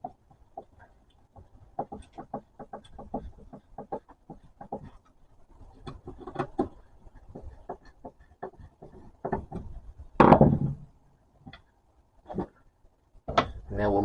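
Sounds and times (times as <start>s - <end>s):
loud thump on workbench: 10.2s - 10.8s.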